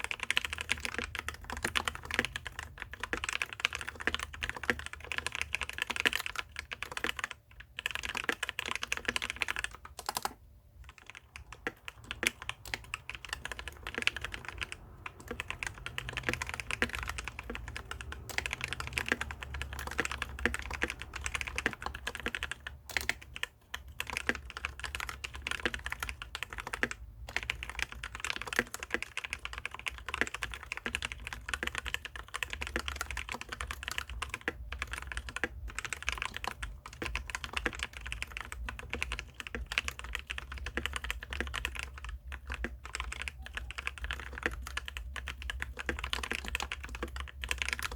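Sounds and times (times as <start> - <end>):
mechanical keyboard typing: 0.0 - 47.9.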